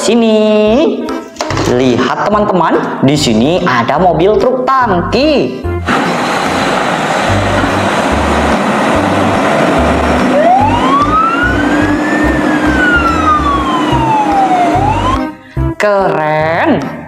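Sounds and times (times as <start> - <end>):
truck engine rumble: 5.8 - 15.2
siren wail: 8.0 - 15.3.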